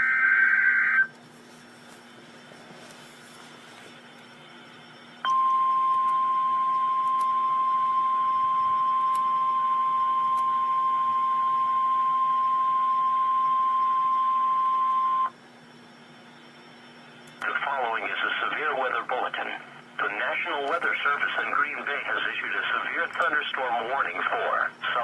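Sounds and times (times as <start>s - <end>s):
faint radio hiss: 0.1s - 5.2s, 15.0s - 25.0s.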